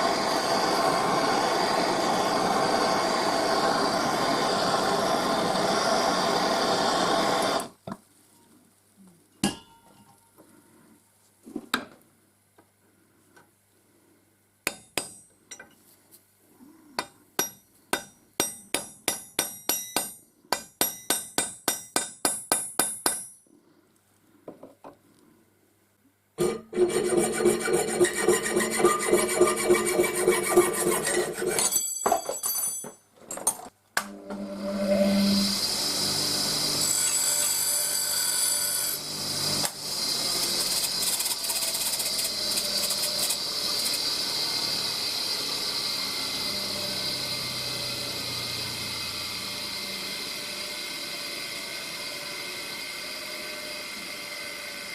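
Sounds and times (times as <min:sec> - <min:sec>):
machine tool cutting metal: 0:26.4 - 0:31.7, 0:34.0 - 0:54.9.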